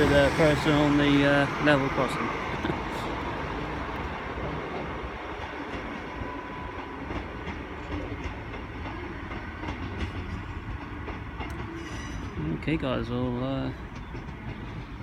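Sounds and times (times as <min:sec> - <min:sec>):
diesel train running: 0:00.0 - 0:15.0
wheels clicking over rail joints: 0:04.0 - 0:15.0.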